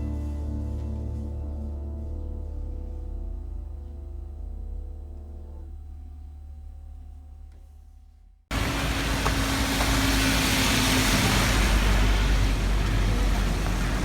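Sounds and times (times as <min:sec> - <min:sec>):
soft music with gong ringing: 0:00.0 - 0:06.6
low rumble: 0:00.0 - 0:14.0
loud steady rushing noise: 0:08.5 - 0:14.0.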